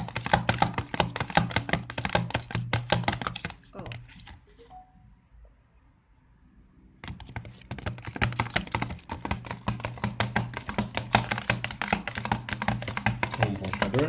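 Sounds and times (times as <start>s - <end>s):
sticky clicks of stirred slime: 7.0s - 14.0s.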